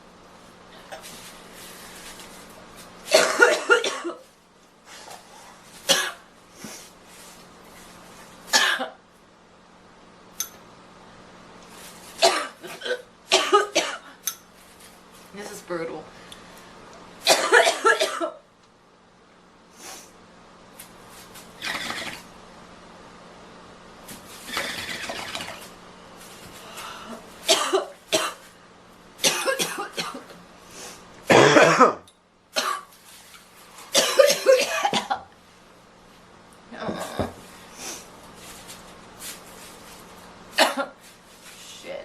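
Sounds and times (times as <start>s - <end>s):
girl coughing: 3.1s - 4.2s, 5.9s - 6.2s, 8.5s - 9.0s, 12.2s - 14.2s, 17.3s - 18.4s, 27.5s - 28.4s, 29.2s - 30.3s, 31.3s - 32.9s, 34.0s - 35.3s, 40.6s - 41.0s
long noisy breath: 26.6s - 27.2s.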